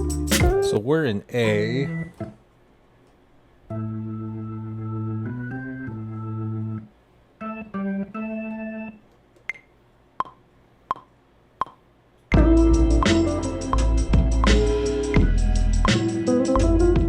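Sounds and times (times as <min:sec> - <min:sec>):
organ-like keyboard chords: 0:00.0 - 0:00.8, 0:03.7 - 0:09.1, 0:12.3 - 0:17.0.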